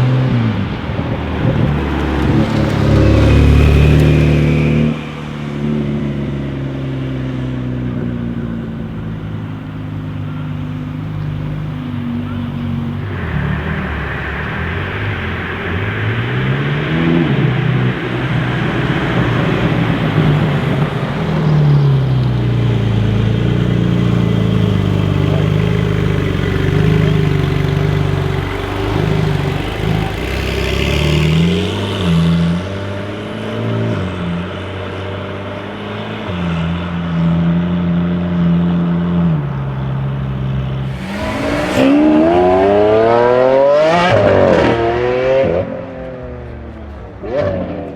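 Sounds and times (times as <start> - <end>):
car engine revving through gears: 0.0 - 46.5.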